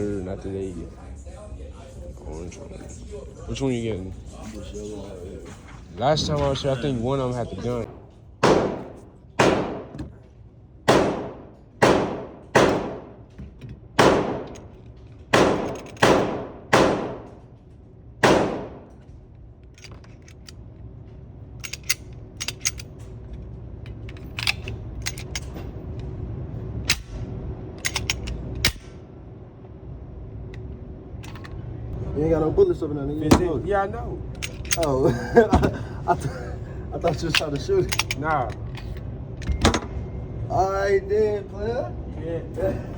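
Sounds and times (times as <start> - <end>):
gunshots echoing: 7.8 - 10.0, 10.9 - 13.2, 14.0 - 14.6, 15.3 - 17.4, 18.2 - 19.0.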